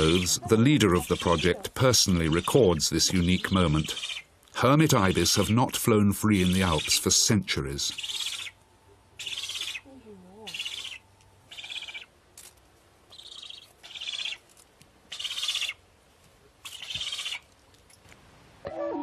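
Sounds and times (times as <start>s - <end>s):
birds harsh rasping calls: 0.0s - 7.2s, 7.8s - 8.6s, 9.2s - 9.9s, 10.5s - 12.2s, 13.1s - 14.5s, 15.1s - 15.8s, 16.6s - 17.5s.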